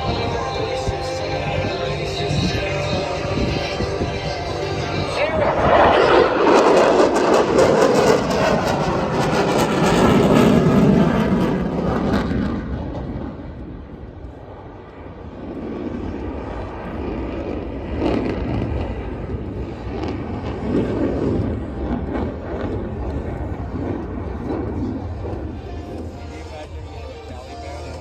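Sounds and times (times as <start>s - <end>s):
plane flying past: 0.0s - 28.0s.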